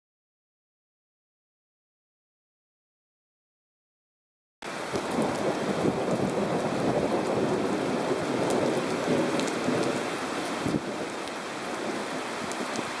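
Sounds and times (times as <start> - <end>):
heavy rain pouring: 4.6 - 13.0.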